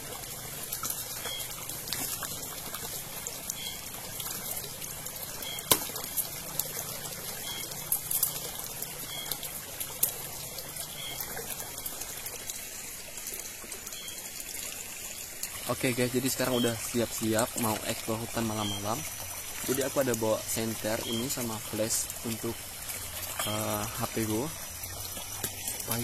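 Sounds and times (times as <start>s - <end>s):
faint high chirp: 1.2s - 1.6s, 5.4s - 5.7s, 7.4s - 9.4s, 13.9s - 14.3s, 18.5s - 19.0s, 20.9s - 21.4s.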